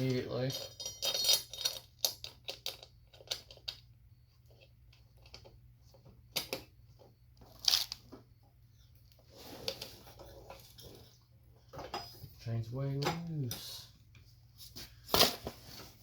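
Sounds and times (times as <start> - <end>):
metallic clinks of tools: 0.0 - 2.8.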